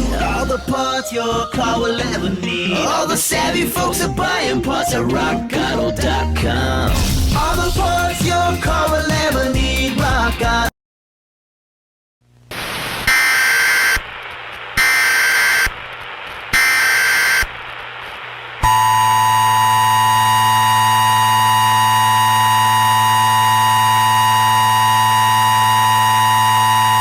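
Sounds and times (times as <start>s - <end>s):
static hiss: 12.3s - 18.6s
screeching data tones: 13.1s - 14.0s, 14.8s - 15.8s, 16.6s - 17.6s, 18.6s - 27.0s
two-tone attention signal: 18.6s - 27.0s.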